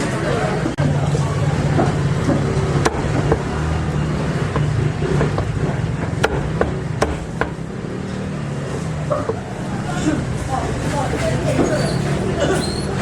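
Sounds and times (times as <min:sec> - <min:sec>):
cleaver chopping meat: 0:01.6 - 0:07.8.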